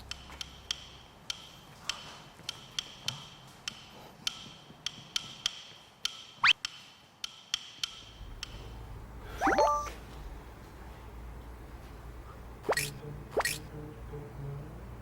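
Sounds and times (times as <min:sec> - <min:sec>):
wood-block ticks: 0:00.0 - 0:08.6
cluster of rising tones: 0:09.4 - 0:10.0.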